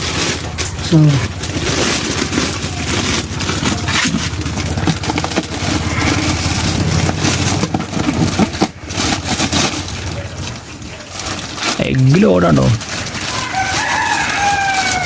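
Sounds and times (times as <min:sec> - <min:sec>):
engine running at low speed: 0:00.0 - 0:11.7.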